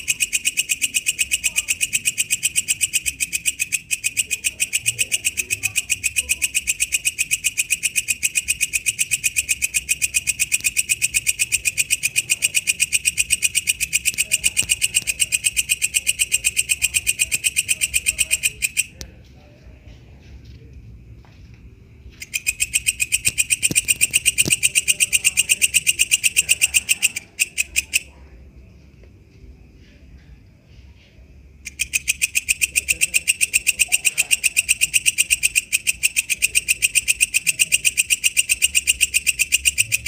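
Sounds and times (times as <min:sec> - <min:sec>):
bush cricket calling: 0:00.0 - 0:19.0, 0:22.1 - 0:28.2.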